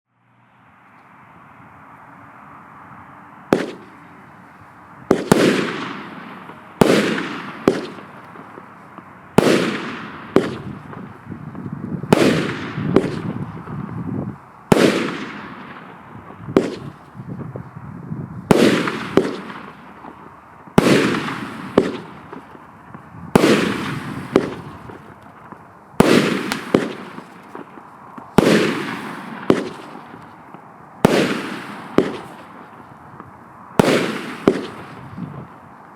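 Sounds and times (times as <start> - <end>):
firework launches and bursts: 3.5 - 4.0, 5.0 - 11.4, 12.0 - 17.2, 18.4 - 35.7.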